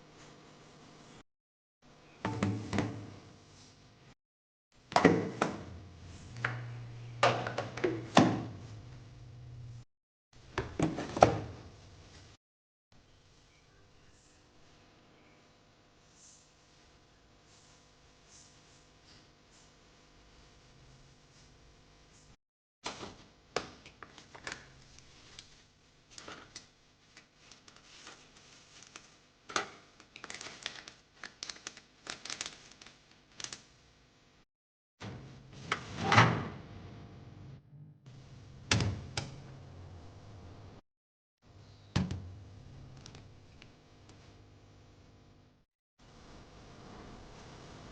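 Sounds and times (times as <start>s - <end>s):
plastic packaging crinkling: 24.0s - 33.7s.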